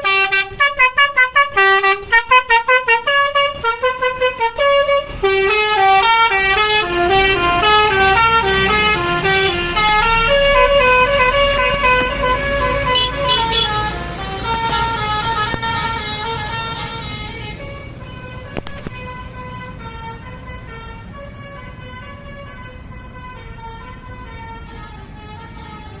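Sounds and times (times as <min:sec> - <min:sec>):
multi-tone bus horn melody: 0:00.0 - 0:26.0
low rumble: 0:09.2 - 0:12.8.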